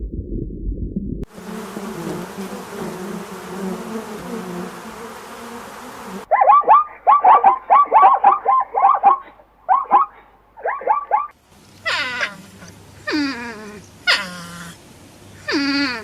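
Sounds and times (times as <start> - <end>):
low rumble: 0.0 - 1.3
insect buzzing: 1.3 - 6.3
animal chirping calls: 6.3 - 14.8.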